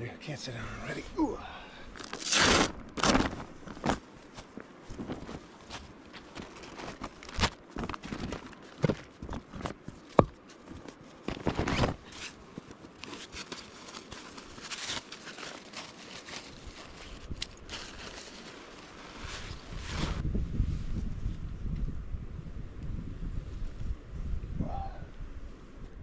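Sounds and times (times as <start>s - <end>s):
fabric rustling and crinkling: 1.9s - 20.9s.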